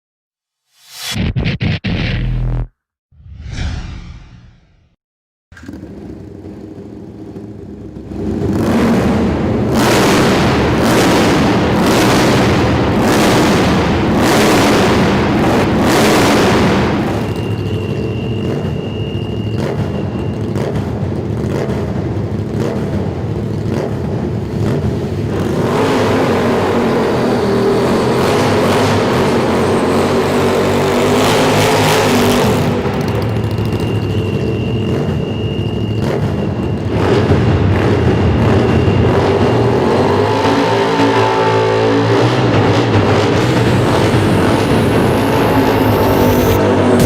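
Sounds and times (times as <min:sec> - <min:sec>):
motorcycle engine revving: 0:05.6 - 0:17.4, 0:19.5 - 0:35.3, 0:35.9 - 0:47.0.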